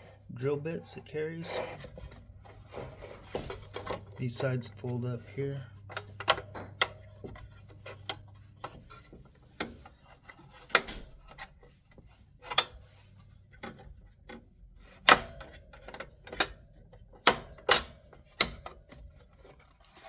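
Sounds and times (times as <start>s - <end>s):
light rubbing: 1.3s - 6.2s.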